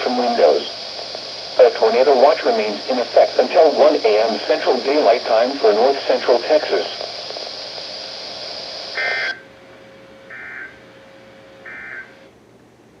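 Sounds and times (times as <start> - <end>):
radio hiss: 0.0 - 9.6.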